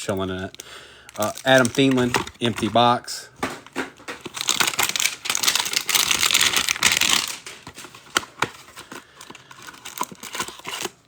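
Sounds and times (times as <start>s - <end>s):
plastic wrapper crinkling and tearing: 0.0s - 11.0s
cards tapping and clicking: 1.1s - 10.9s.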